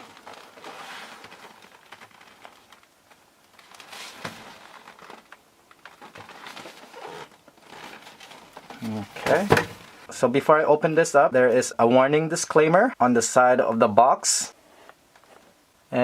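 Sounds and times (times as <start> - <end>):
cardboard box rustling: 3.6 - 10.0.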